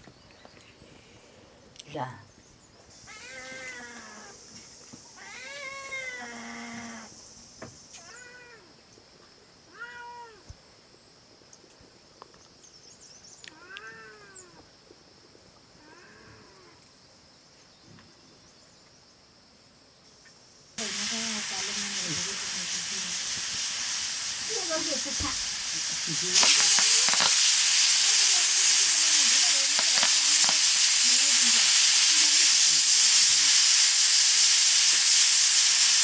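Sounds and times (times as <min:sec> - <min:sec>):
high-pitched hiss: 0:00.0 - 0:08.6, 0:20.1 - 0:36.0
cat meowing: 0:05.2 - 0:07.0, 0:08.0 - 0:08.7, 0:09.7 - 0:10.5, 0:13.5 - 0:14.6.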